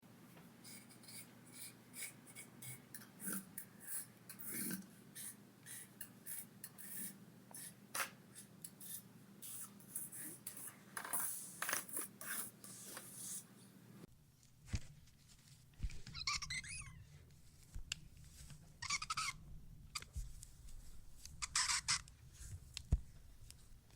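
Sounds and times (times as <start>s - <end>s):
tiny tools scratching and clicking: 0.6s - 13.4s.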